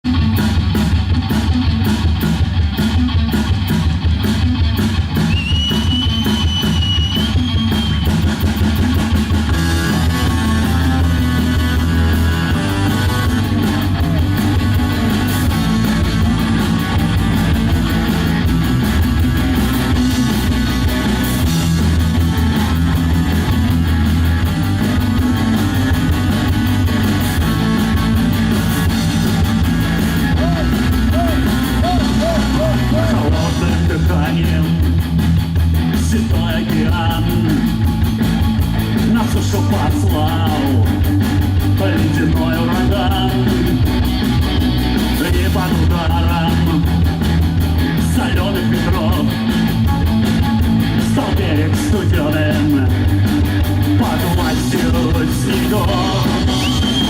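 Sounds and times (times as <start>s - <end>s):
rock band playing live: 0.0s - 57.0s
gliding high guitar line: 7.3s - 35.9s.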